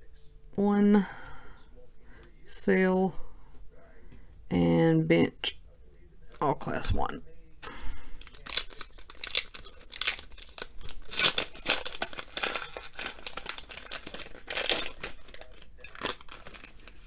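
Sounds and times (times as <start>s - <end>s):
foil wrapper crinkling and tearing: 8.2s - 17.0s.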